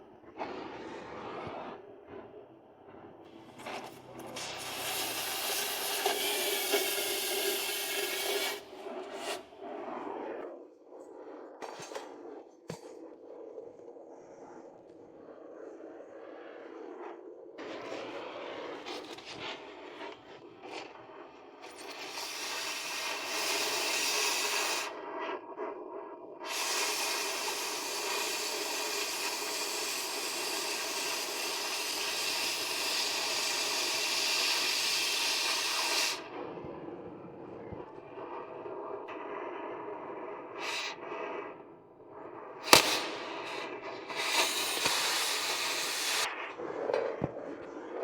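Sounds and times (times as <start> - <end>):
power tool hissing: 3.3 - 9.6, 21.6 - 24.9, 26.5 - 36.3, 40.6 - 40.9, 42.6 - 46.3.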